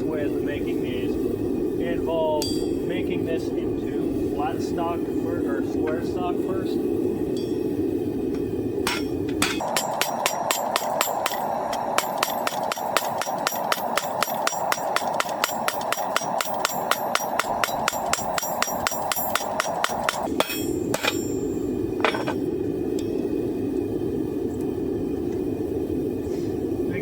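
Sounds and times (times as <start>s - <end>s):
steady rushing noise: 0.0s - 27.0s
hammer ringing on anvil: 2.4s - 2.8s, 8.9s - 22.3s.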